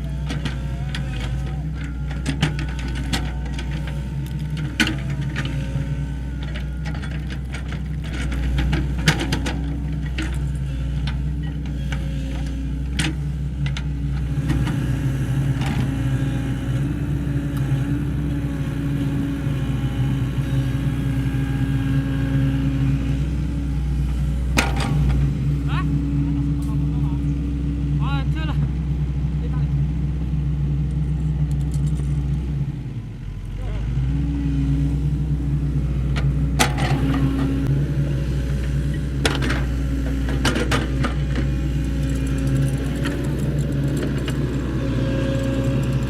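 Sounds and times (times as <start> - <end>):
excavator diesel engine running: 0.0 - 46.0
hydraulic whine: 36.6 - 46.0.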